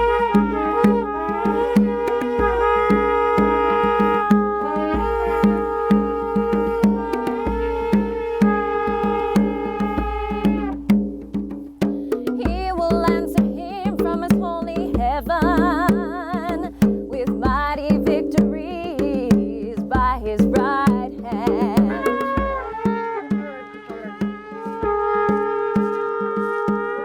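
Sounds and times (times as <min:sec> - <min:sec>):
percussion hits: 0:00.0 - 0:27.0.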